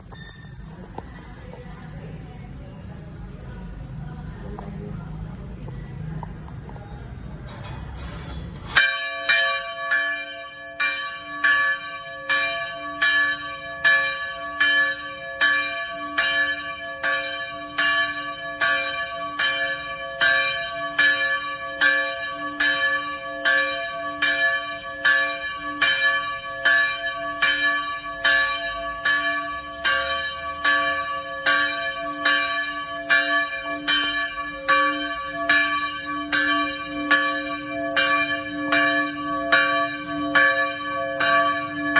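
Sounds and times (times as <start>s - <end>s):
church bell tolling: 7.5s - 41.9s.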